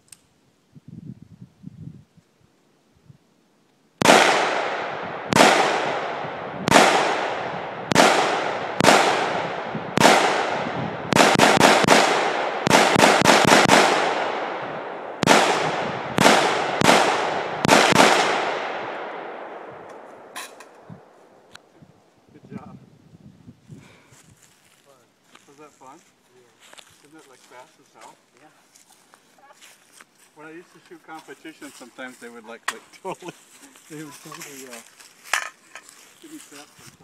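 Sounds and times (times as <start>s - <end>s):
rifle shots echoing: 4.0s - 20.4s.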